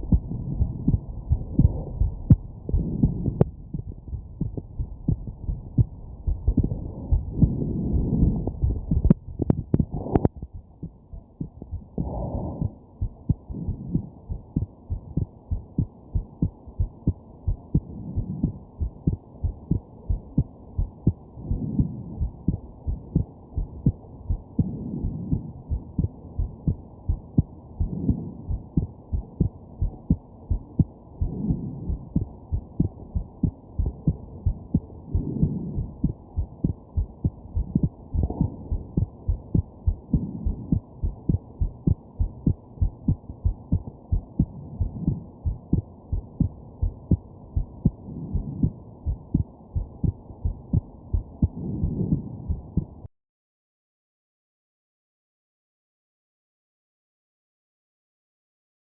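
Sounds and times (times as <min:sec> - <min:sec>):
heartbeat thumping: 0:00.0 - 0:53.1
breathing: 0:12.0 - 0:12.8.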